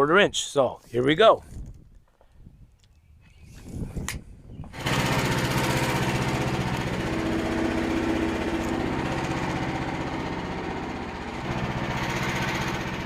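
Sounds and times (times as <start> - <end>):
small gas engine at full throttle: 4.7 - 13.0.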